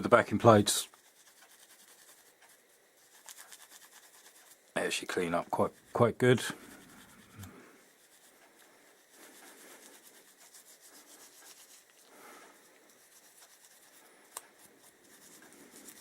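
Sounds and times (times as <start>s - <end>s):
wire wool scrubbing metal: 0.0s - 16.0s.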